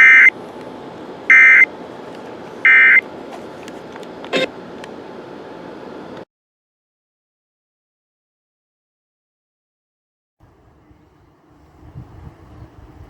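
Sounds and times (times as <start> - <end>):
buzzing data code tones: 0.0 - 0.3, 1.3 - 1.7, 2.6 - 3.0.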